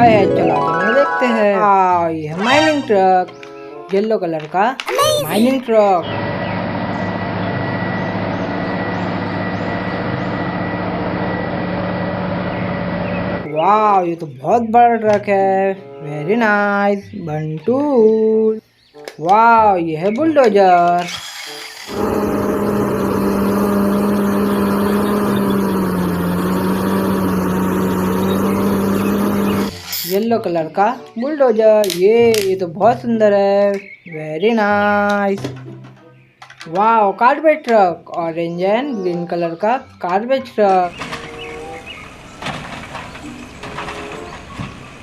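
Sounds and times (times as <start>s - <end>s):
heavy truck engine running: 6.0s - 13.5s, 21.4s - 29.9s, 40.9s - 45.0s.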